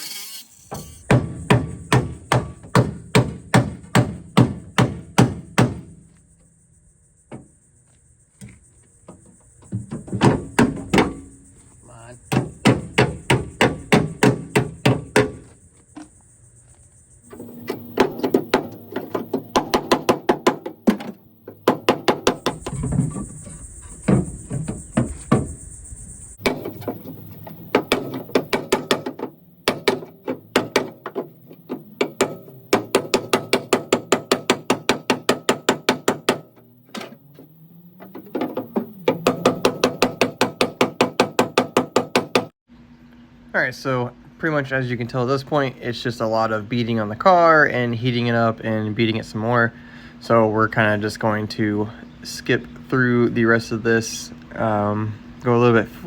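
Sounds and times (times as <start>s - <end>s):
hammer blows on sheet metal: 17.4s - 22.8s, 26.4s - 36.6s.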